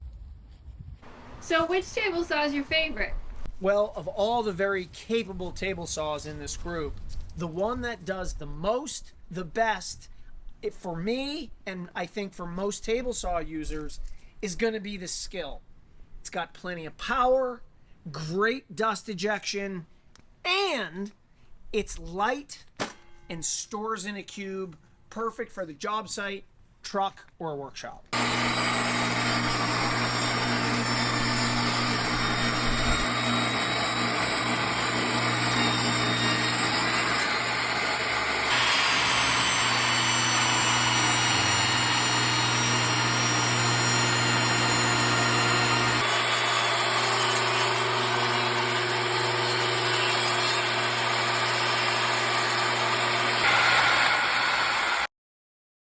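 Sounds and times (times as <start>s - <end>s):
table saw motor humming: 1.0s - 3.4s, 28.2s - 55.1s.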